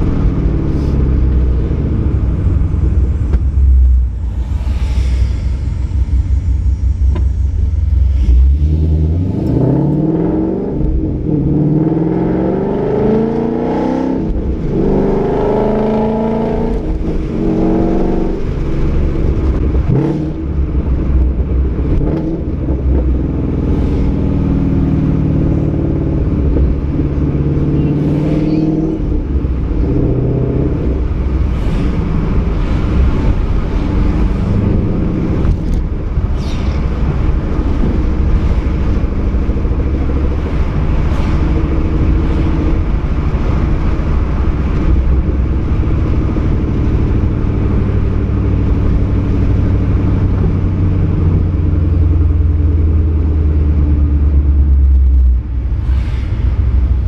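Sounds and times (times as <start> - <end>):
car engine accelerating through gears: 6.5 - 55.6.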